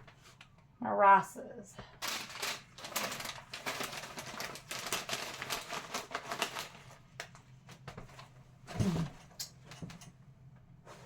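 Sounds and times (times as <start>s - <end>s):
food packets rustling: 2.0s - 8.2s.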